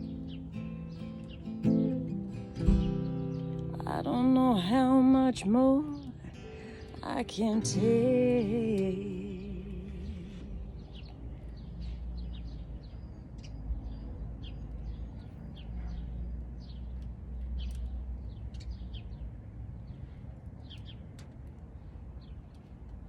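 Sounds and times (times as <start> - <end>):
guitar and voice song: 0.0 - 11.1
low outdoor rumble: 0.0 - 23.0
small birds chirping: 0.0 - 23.0.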